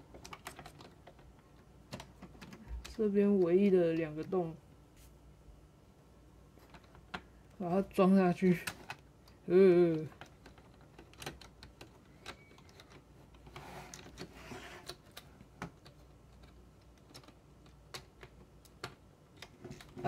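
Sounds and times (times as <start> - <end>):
soft rustle: 4.9 - 5.3.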